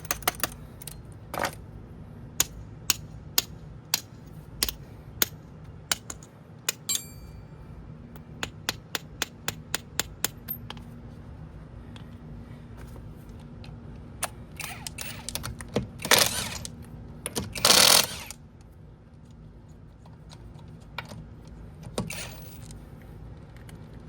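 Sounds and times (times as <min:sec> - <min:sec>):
metal tools clicking and tapping: 0:00.0 - 0:01.6, 0:02.4 - 0:10.9
ringing metal clink: 0:06.7 - 0:07.8.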